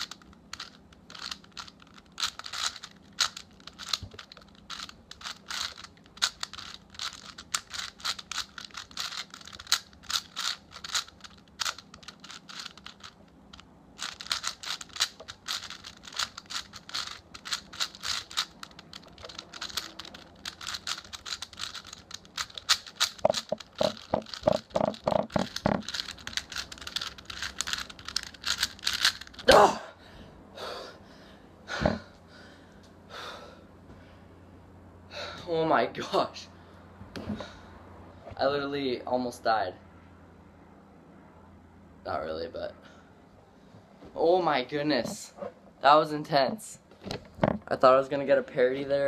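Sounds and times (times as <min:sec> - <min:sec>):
puzzle cube clicking and rattling: 0:00.0 - 0:29.5.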